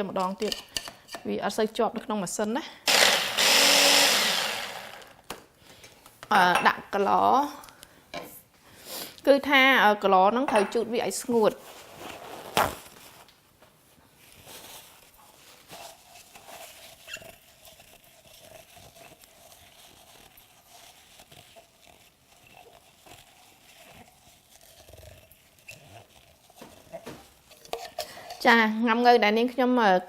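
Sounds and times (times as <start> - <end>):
utensils and jar scraping and tapping: 0.2 - 1.4, 25.6 - 28.5.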